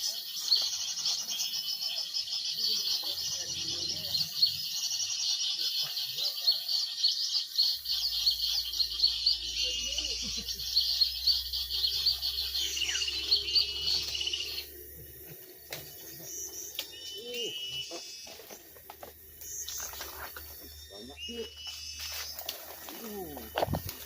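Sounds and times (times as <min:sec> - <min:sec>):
small birds chirping chorus: 0:00.0 - 0:24.0
short bird calls: 0:07.6 - 0:14.7.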